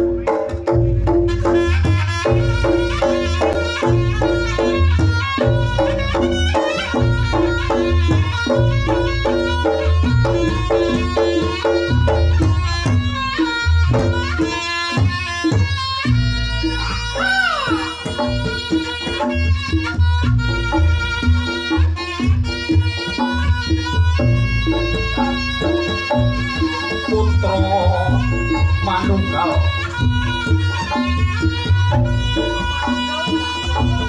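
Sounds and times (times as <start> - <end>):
hand drum beats: 0.0 - 34.0
shrill reed melody: 20.5 - 34.0.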